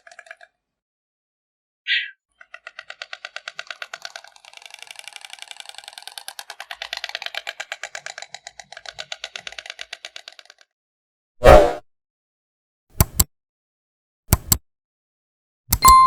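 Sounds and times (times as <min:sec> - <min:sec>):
stork bill-clattering: 0:02.3 - 0:10.7.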